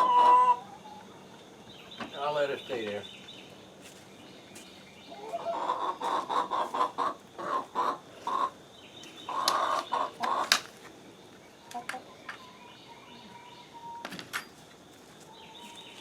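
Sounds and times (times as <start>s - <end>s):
hens clucking: 0.0s - 3.0s, 5.1s - 14.1s.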